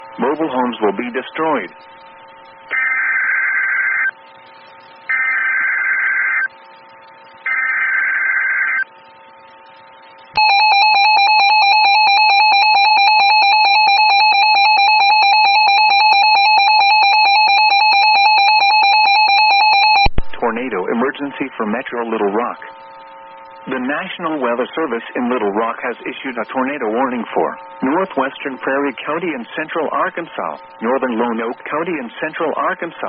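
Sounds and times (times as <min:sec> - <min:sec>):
two-tone attention signal: 0:10.4 - 0:20.1.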